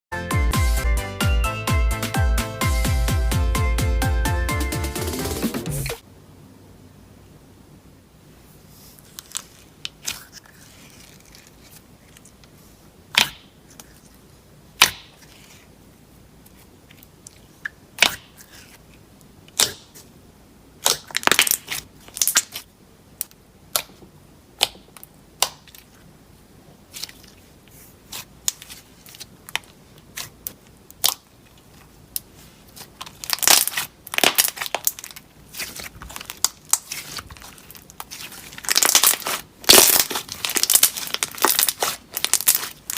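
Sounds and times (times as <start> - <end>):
slime squishing with clicks and pops: 13.1 - 14.0, 14.8 - 15.4, 17.0 - 18.6, 19.5 - 20.0, 20.8 - 24.0, 24.6 - 25.9, 28.1 - 42.9.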